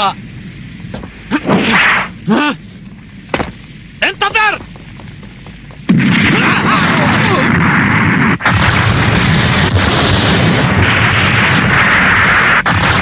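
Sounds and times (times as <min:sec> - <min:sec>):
cartoon explosion blasts: 0:01.3 - 0:02.2, 0:05.9 - 0:13.0.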